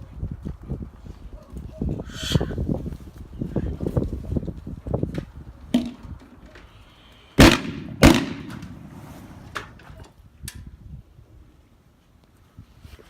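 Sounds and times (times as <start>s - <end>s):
firecracker bangs: 7.4s - 9.8s.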